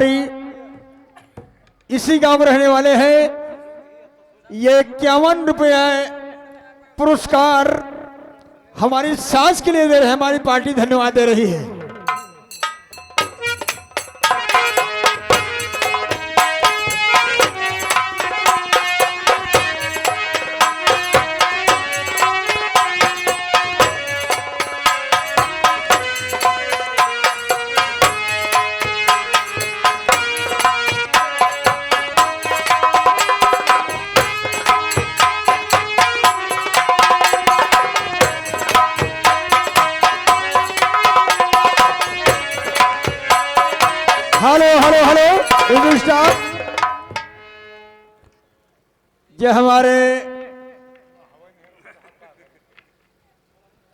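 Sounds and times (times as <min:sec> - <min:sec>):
hand drum strokes: 0:11.8 - 0:47.7
sustained melody line: 0:12.1 - 0:47.9.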